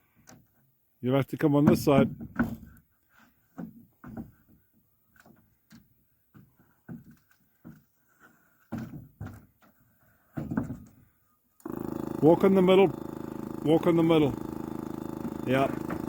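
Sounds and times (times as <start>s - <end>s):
footsteps on plywood roof: 1.6s - 11.1s.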